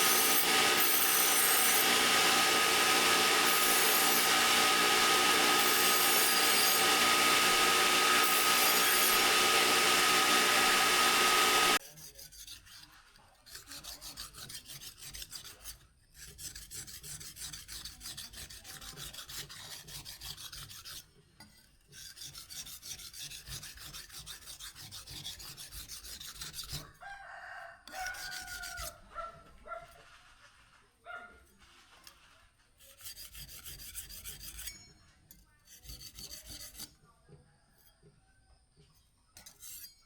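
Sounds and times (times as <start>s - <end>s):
power tool: 0.0s - 11.8s
steel blade being filed: 0.0s - 27.0s, 27.9s - 29.1s, 32.8s - 37.0s, 39.4s - 40.0s
rooster crowing: 27.0s - 28.8s.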